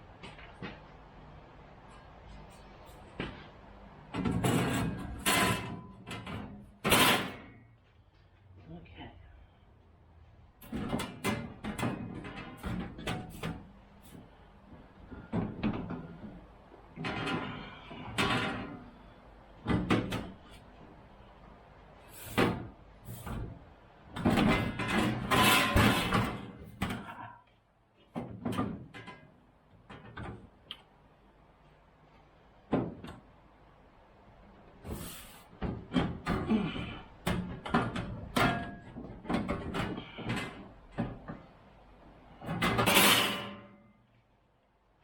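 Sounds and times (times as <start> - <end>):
clunks and knocks on metal: 4.1 - 7.7, 10.6 - 13.7, 14.7 - 19.0, 19.6 - 20.5, 22.4 - 27.3, 28.1 - 30.5, 32.7 - 33.3, 35.6 - 41.5.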